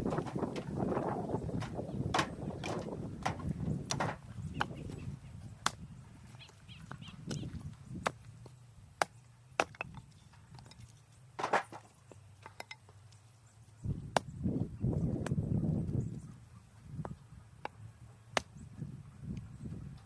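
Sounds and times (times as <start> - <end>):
firewood cracking: 0.0 - 4.7, 9.0 - 12.7
wood clattering: 0.0 - 5.0, 9.6 - 13.0.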